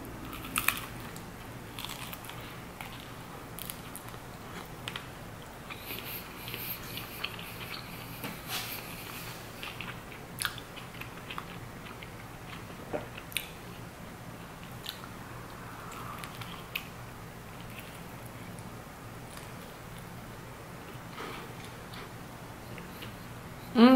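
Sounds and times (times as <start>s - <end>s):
low steady hum: 0.0s - 23.9s
person chewing toast: 0.3s - 13.8s.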